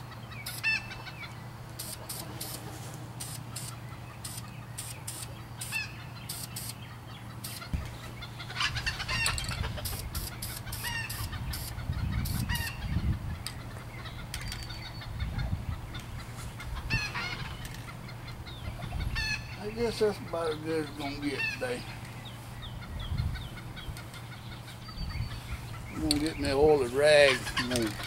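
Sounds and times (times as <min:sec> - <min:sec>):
short bursts of high hiss: 0:01.8 - 0:06.8
chickens clucking: 0:05.6 - 0:28.0.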